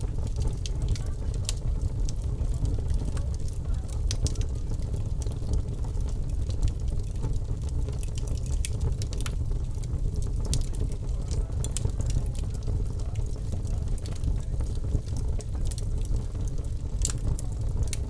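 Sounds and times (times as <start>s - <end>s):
fire pops and snaps: 0.0s - 18.0s
low rumble of fire: 0.0s - 18.0s.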